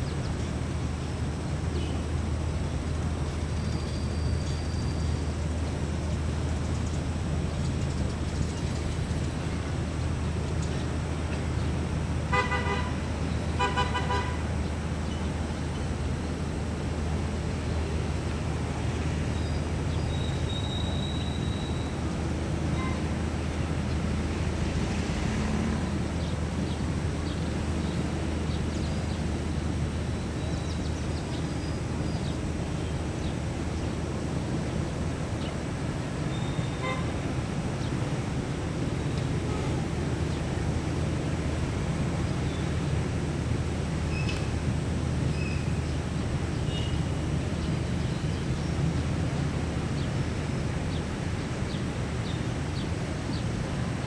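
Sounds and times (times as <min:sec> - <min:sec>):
street hum: 0:00.0 - 0:54.0
vehicle horn honking: 0:12.3 - 0:14.5, 0:36.5 - 0:37.2, 0:46.7 - 0:47.2.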